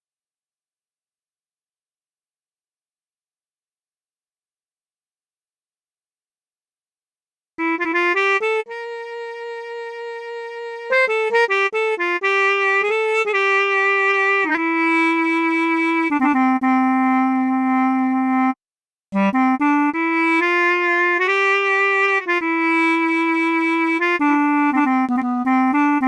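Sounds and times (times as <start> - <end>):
brass instrument melody: 7.6 - 18.6, 19.2 - 26.0.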